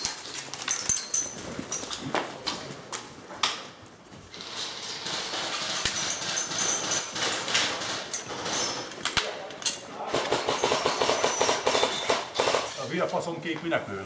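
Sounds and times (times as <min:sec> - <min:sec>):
rustling movement: 0:00.0 - 0:07.2.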